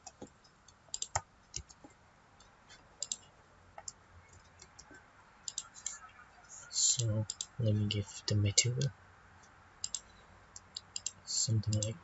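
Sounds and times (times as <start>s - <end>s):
computer mouse clicking: 0.0s - 1.9s, 3.0s - 3.2s, 3.8s - 6.0s, 7.0s - 7.6s, 9.8s - 12.0s.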